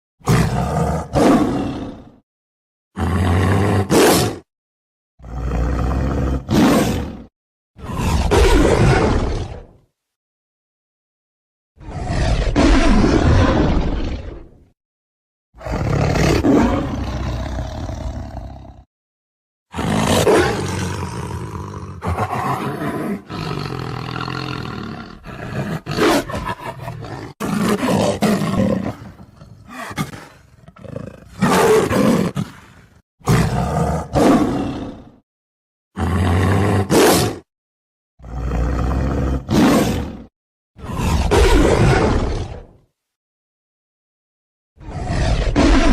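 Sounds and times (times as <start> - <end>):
leopard roaring: 0.2 - 2.2, 3.0 - 4.4, 5.2 - 9.7, 11.8 - 14.6, 15.6 - 18.9, 19.7 - 35.2, 36.0 - 37.5, 38.2 - 42.6, 44.8 - 45.9.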